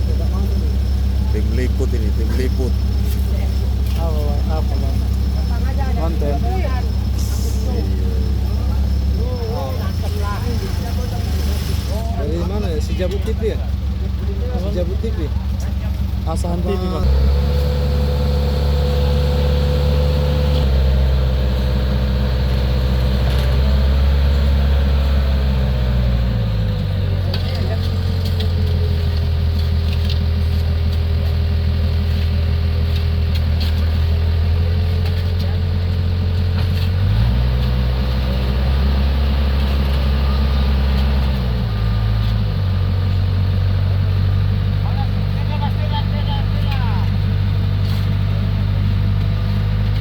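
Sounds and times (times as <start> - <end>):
heavy machinery engine humming: 0.0 - 50.0.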